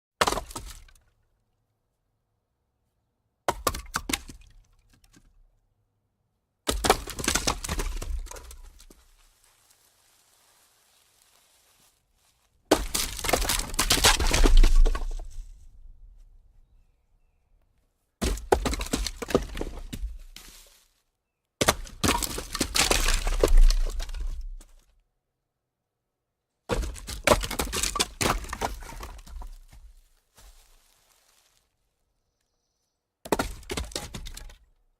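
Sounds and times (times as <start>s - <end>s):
wooden logs rolling and clattering: 6.7s - 16.3s, 18.2s - 20.9s, 21.6s - 24.9s, 26.7s - 31.6s, 33.3s - 34.8s.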